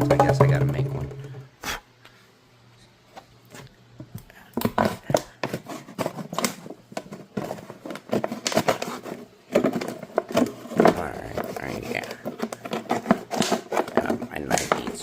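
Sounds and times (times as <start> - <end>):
knife cutting plastic container: 4.5 - 15.0.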